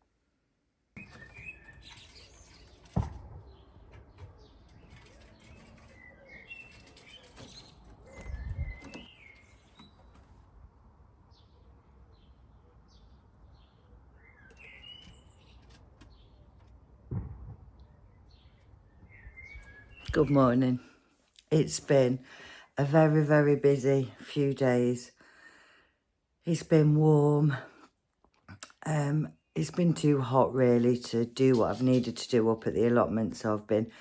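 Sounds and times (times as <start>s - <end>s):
birds chirping: 1.0s - 25.1s
low wind buffets: 2.3s - 9.5s
sharp knock: 17.1s - 17.7s.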